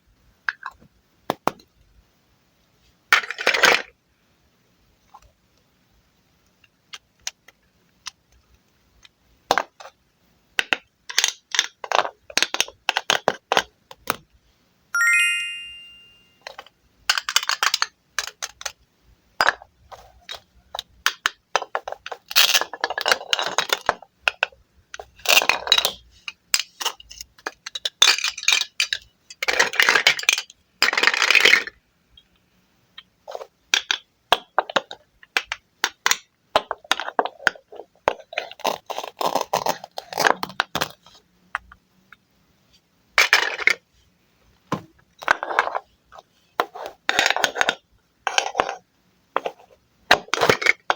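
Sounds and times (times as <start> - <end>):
bright ringing ding: 15.0 - 16.4.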